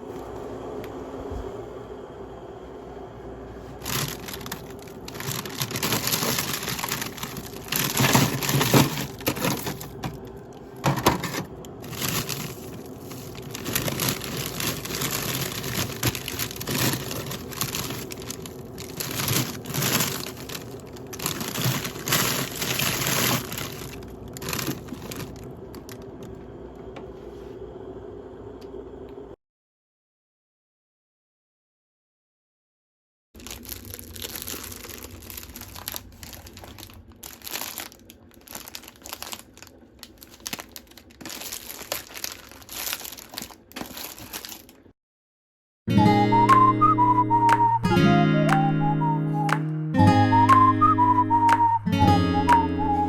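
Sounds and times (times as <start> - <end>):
faint hum: 0.0 - 29.4
plastic packaging crinkling: 3.8 - 26.3, 33.4 - 44.9.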